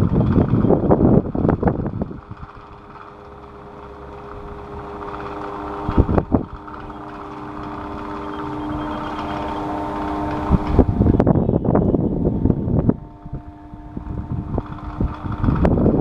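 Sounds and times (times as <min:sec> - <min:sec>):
electric fan motor hum: 0:00.0 - 0:16.0.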